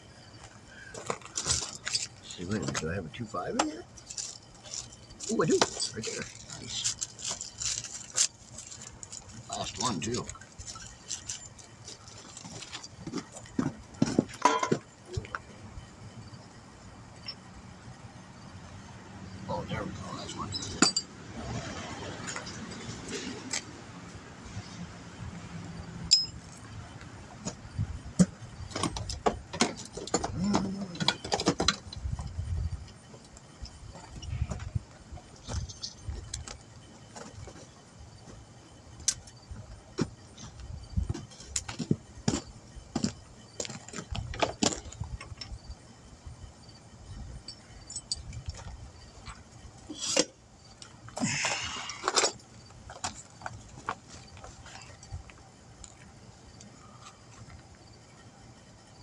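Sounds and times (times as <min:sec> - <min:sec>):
metallic clinks of tools and weights: 0:14.4 - 0:14.8, 0:20.5 - 0:21.1, 0:26.1 - 0:26.6, 0:47.4 - 0:48.7.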